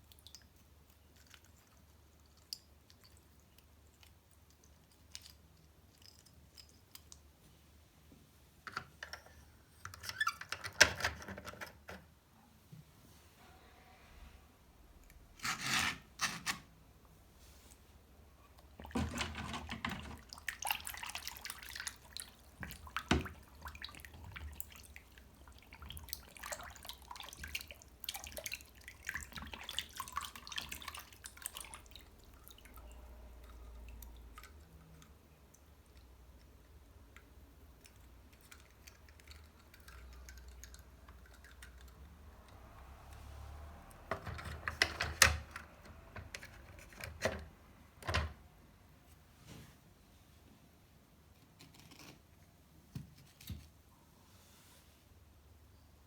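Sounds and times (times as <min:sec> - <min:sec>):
water dripping and splashing: 0:00.0 - 0:07.2, 0:18.7 - 0:44.1.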